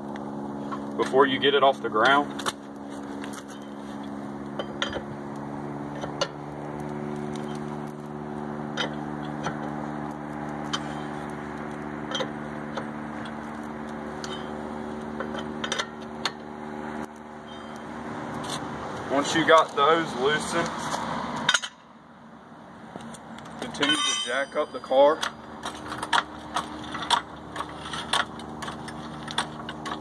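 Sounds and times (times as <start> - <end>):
steady low hum: 0.0 - 30.0
lug wrench clinking on lug nuts: 4.4 - 5.1, 8.8 - 9.7, 12.1 - 13.4, 14.2 - 14.6, 15.2 - 16.5, 21.4 - 21.9, 23.4 - 30.0.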